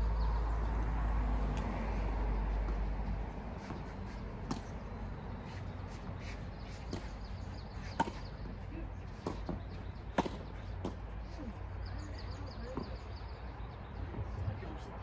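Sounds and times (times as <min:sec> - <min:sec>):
tennis ball bouncing on court: 0:02.6 - 0:11.2, 0:12.6 - 0:13.2
tennis ball struck by rackets: 0:03.6 - 0:06.1, 0:06.7 - 0:11.2.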